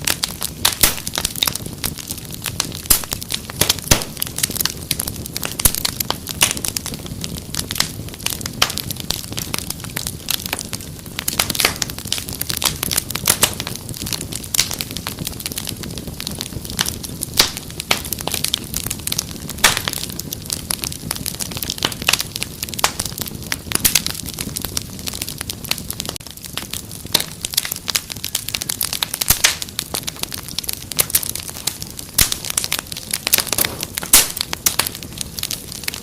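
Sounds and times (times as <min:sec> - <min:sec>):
wood fire crackling: 0:00.0 - 0:36.0.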